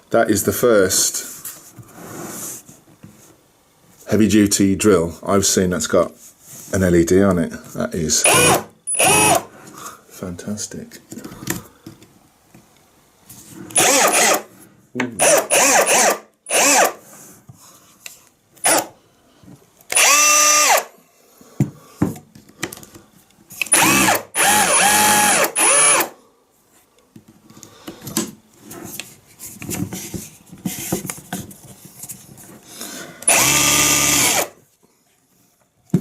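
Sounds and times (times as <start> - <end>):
rotary hammer motor whining: 8.3 - 9.5, 13.8 - 14.4, 15.2 - 17.0, 19.9 - 20.9, 23.7 - 26.1, 33.2 - 34.5.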